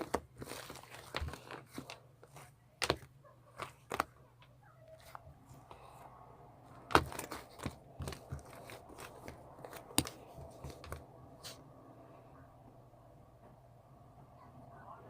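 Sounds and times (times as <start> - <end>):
paper or plastic crinkling: 0.0 - 4.1, 6.8 - 11.6.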